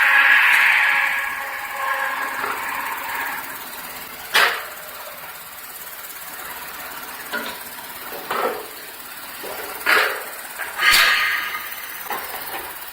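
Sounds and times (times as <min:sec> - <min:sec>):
sharp metallic clanks: 0:00.0 - 0:05.6, 0:09.4 - 0:12.9
welding machine humming: 0:00.0 - 0:12.9.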